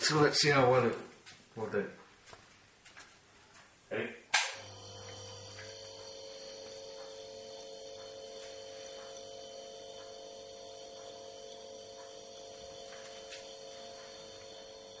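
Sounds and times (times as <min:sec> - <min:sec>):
compressor switch click: 0:04.3 - 0:04.6
compressor humming with high whine: 0:04.3 - 0:15.0.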